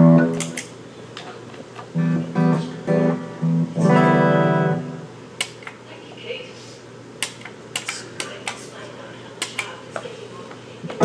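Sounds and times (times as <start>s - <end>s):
plucked guitar notes: 0.0s - 0.6s, 2.0s - 5.1s
sharp clicks: 7.2s - 8.6s, 9.4s - 9.8s.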